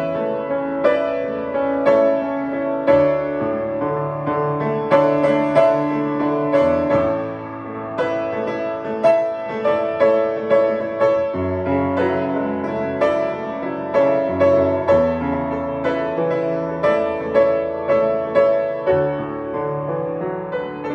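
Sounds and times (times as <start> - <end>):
slow gentle piano piece: 0.0 - 20.9.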